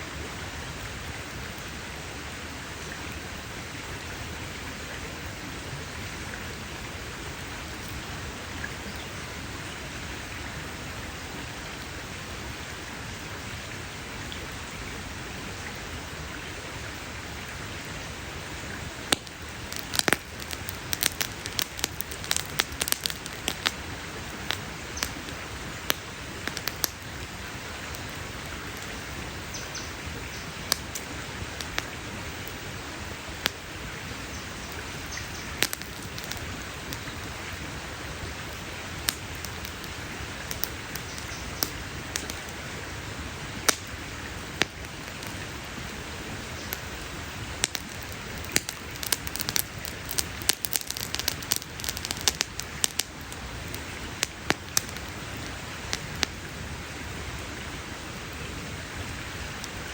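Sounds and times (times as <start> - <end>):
campfire crackling and popping: 17.2 - 58.0, 58.8 - 59.9.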